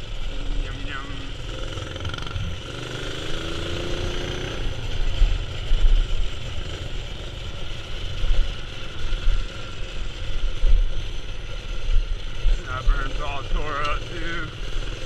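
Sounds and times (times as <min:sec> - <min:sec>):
mini-bike engine running: 0:00.0 - 0:15.0
heavy uneven low rumble: 0:04.5 - 0:14.8.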